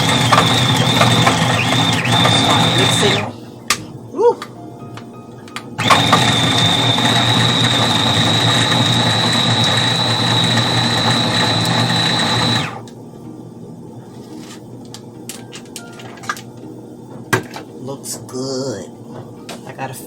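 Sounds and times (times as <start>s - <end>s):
electric chopper motor whining: 0.0s - 3.3s, 5.8s - 12.9s.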